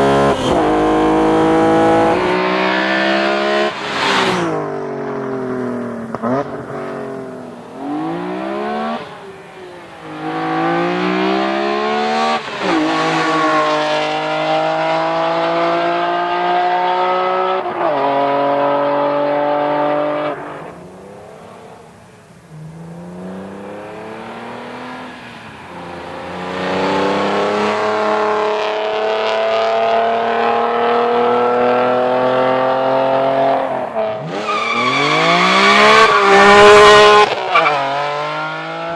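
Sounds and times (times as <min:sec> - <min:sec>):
engine revs at gear changes: 0:00.0 - 0:03.7
car engine accelerating hard: 0:00.0 - 0:21.1, 0:21.8 - 0:38.9.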